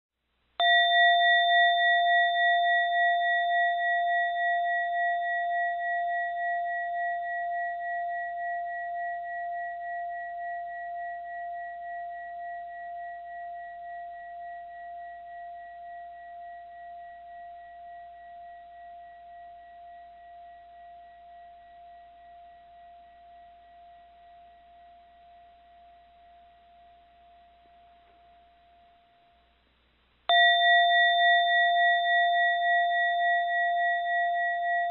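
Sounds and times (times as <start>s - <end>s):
bell ringing: 30.3s - 34.9s.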